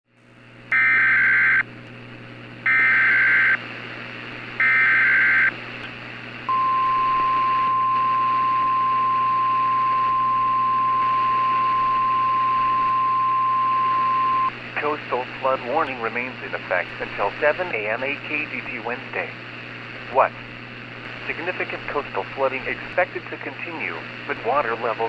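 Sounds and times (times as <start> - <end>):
faint hum and hiss: 0.1 - 25.0.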